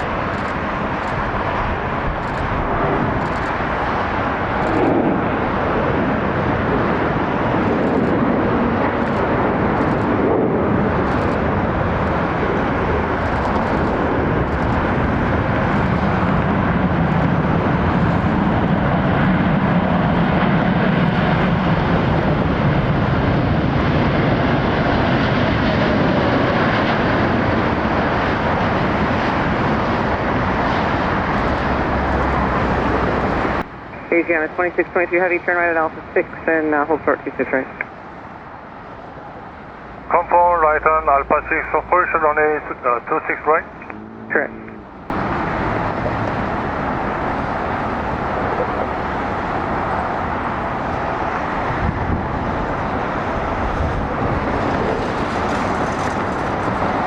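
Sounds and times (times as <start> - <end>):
jet engines roaring on landing: 0.0 - 57.0
falling tone: 43.6 - 45.4.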